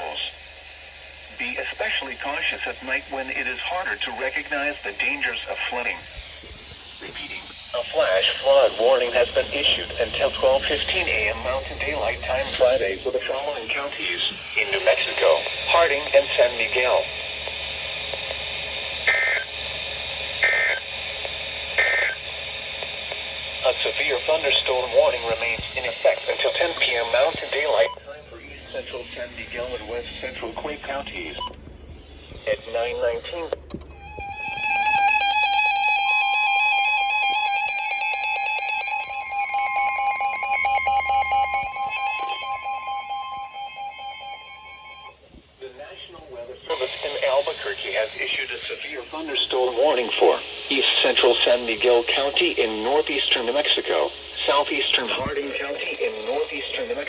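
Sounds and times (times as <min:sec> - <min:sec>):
radio hiss: 0:00.0 - 0:57.0
warbling data bursts: 0:01.3 - 0:57.0.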